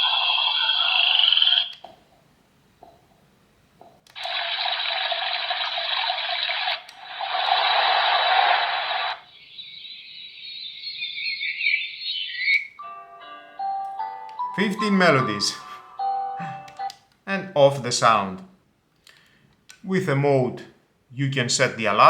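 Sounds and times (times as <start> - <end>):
hissy sounds from small speaker: 4.2 - 10.5.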